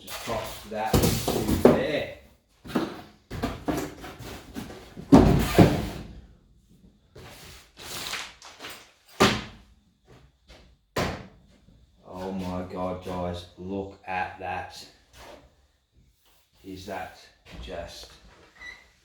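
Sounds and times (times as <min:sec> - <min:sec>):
cardboard and foam packaging scraping: 0:07.3 - 0:08.9.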